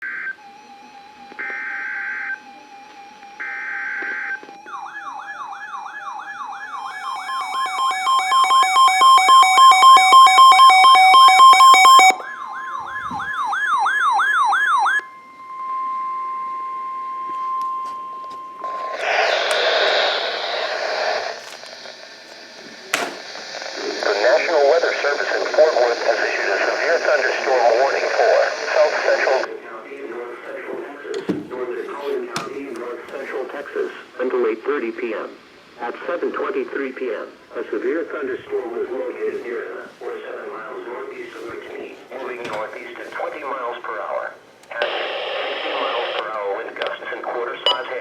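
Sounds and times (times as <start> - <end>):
steady alarm tone: 0.0 - 21.4
warbling alert tones: 6.6 - 12.2
short beeps: 6.8 - 12.2, 15.0 - 19.3.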